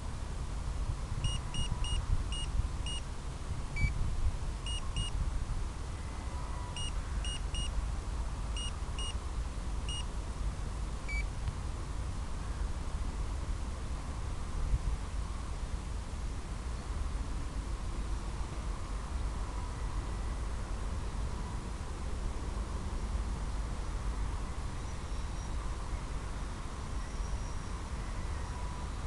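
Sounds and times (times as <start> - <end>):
low rumble and hiss: 0.0 - 29.0
lower-pitched beeps: 1.2 - 3.0, 4.7 - 5.1, 6.8 - 7.7, 8.6 - 9.2, 9.9 - 10.1.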